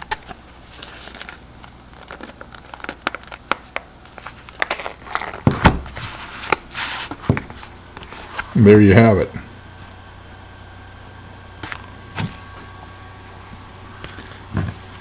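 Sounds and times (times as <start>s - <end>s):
paper crinkling and rustling: 0.1s - 8.5s.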